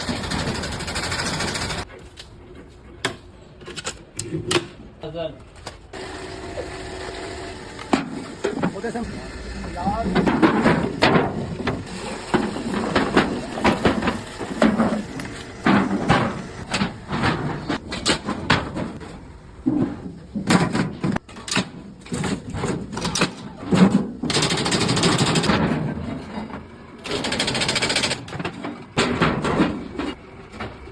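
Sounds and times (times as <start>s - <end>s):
steady machine noise: 0.0s - 1.8s, 6.0s - 17.1s.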